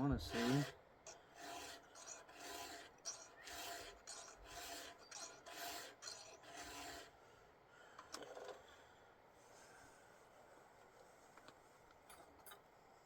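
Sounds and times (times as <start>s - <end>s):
file rasping on chainsaw chain: 0.0s - 7.2s.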